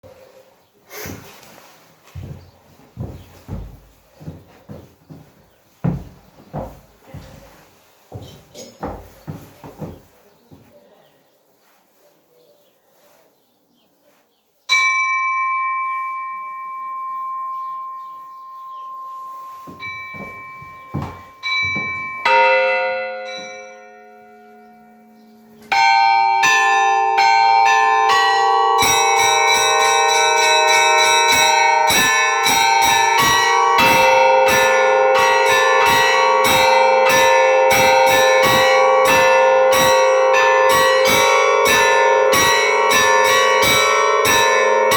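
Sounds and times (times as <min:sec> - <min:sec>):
church bell strikes: 0:14.7 - 0:44.9
deep bell ringing: 0:14.7 - 0:44.9
rapid peal of many bells: 0:14.7 - 0:44.9.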